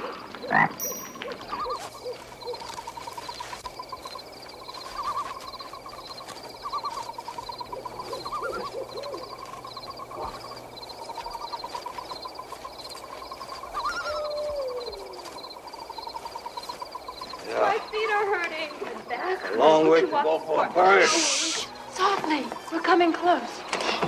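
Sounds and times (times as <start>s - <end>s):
rapid animal trills: 0.0s - 18.7s, 20.9s - 23.1s
high repeated chirps: 0.5s - 18.4s.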